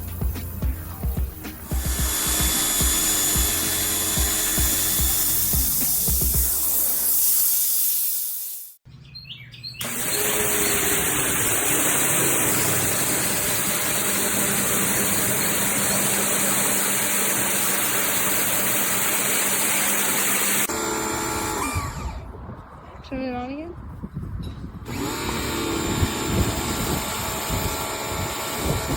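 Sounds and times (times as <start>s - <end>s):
pressure washer spraying: 0.0s - 8.8s, 9.8s - 20.7s
bird chirps: 8.8s - 9.8s.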